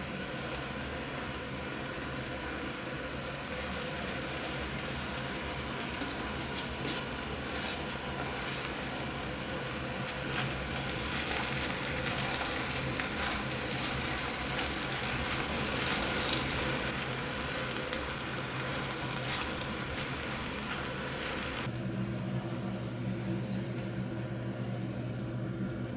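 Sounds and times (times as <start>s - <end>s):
food sizzling in a pan: 10.2s - 21.8s
steady low hum: 19.3s - 25.9s.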